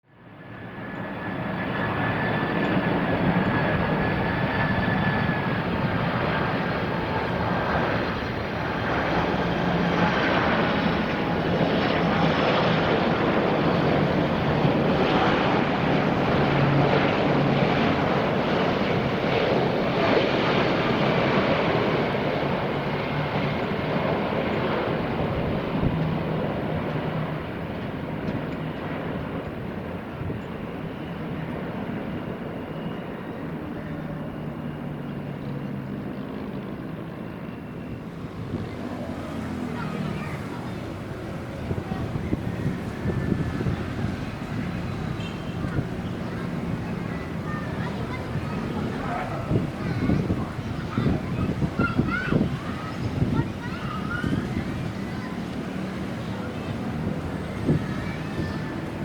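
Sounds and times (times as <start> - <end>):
jet engines roaring: 0.2 - 59.0
high fan whine: 37.8 - 59.0.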